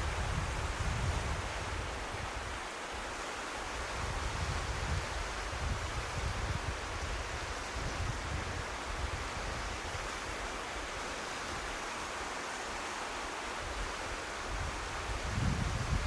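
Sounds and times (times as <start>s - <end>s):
wind buffeting microphone: 0.0s - 2.6s, 3.9s - 10.0s, 14.5s - 16.0s
sea surf washing on shore: 0.0s - 16.0s.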